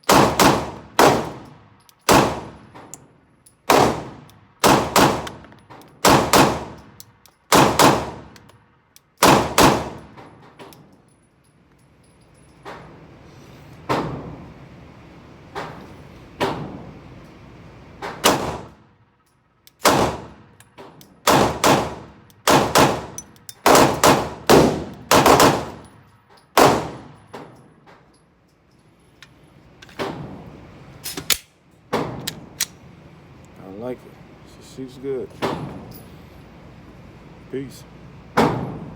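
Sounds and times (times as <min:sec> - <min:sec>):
pistol shots: 0:00.1 - 0:02.7, 0:03.7 - 0:08.4, 0:09.2 - 0:10.2, 0:18.2 - 0:18.8, 0:19.8 - 0:20.5, 0:21.2 - 0:25.8, 0:26.6 - 0:27.2.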